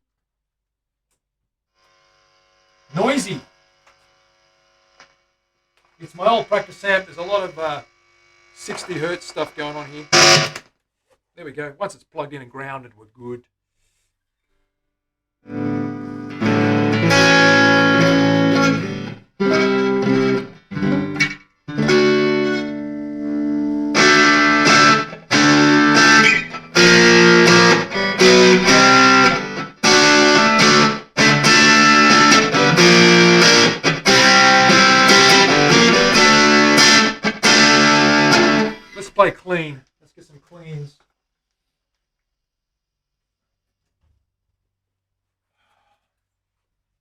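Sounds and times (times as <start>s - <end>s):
overdriven electric guitar: 8.6s - 10.6s, 15.4s - 39.0s.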